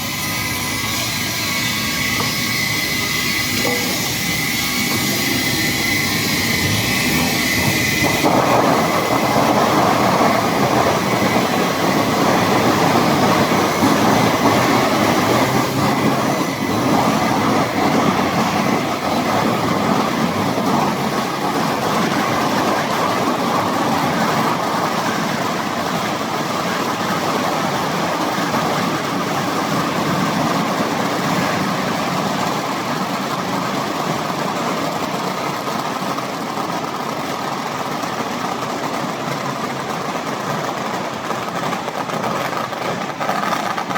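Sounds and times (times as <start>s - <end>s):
band saw running: 0.0s - 24.6s.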